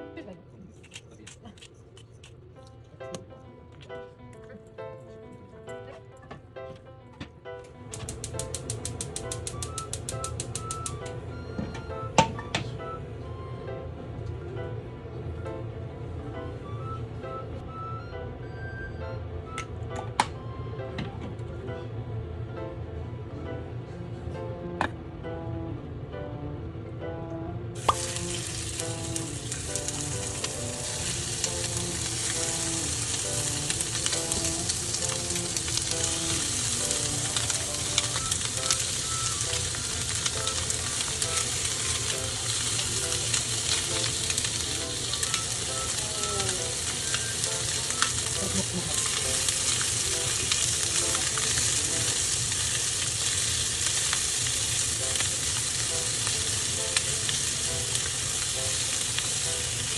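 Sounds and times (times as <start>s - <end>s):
utensil clicks stirring food: 7.9s - 11.0s
food sizzling in frying pan: 8.0s - 11.3s, 27.8s - 59.9s.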